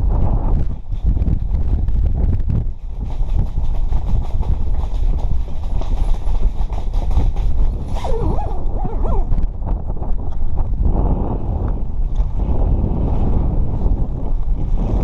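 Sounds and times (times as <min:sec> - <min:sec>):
wind buffeting microphone: 0:00.0 - 0:15.0
rapid clicking and rattling: 0:00.6 - 0:08.3.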